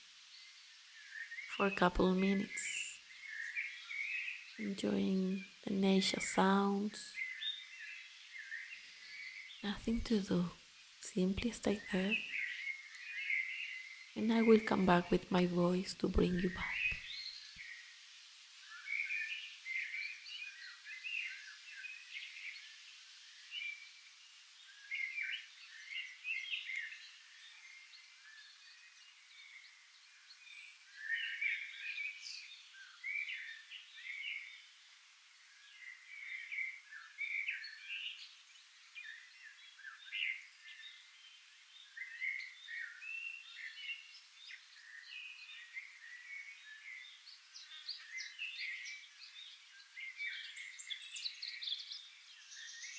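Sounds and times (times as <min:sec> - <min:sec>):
birds chirping: 0:01.0 - 0:17.8.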